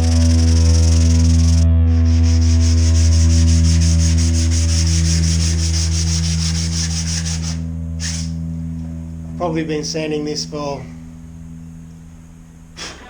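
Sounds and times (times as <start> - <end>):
sandpaper rubbing on filler: 0.0 - 8.3.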